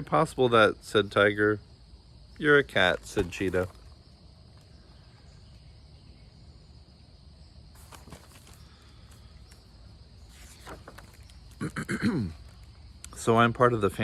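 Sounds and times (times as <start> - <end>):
soft rustles: 7.8 - 11.6.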